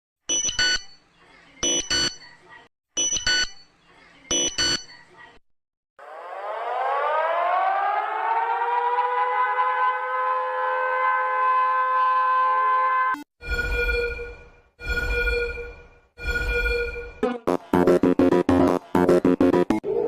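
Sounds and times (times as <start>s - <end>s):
siren winding up and wailing: 6.0s - 17.5s.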